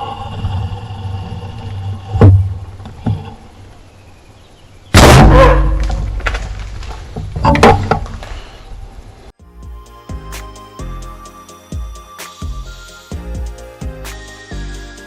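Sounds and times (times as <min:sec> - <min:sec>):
very loud bang: 0:05.0 - 0:06.1.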